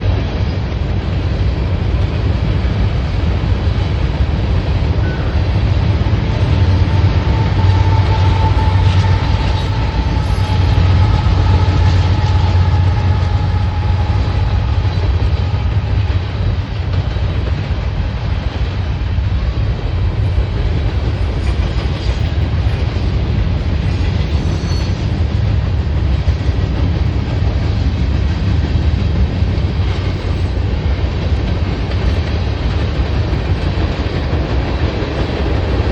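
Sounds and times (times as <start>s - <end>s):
freight train rumbling past: 0.0s - 35.9s
faint high wheel squeal: 5.0s - 5.4s, 6.8s - 15.5s, 24.4s - 25.1s.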